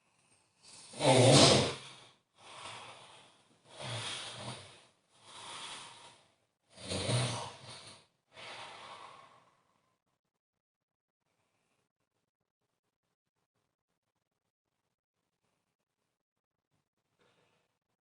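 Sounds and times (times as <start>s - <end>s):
person snoring: 0.6s - 9.7s.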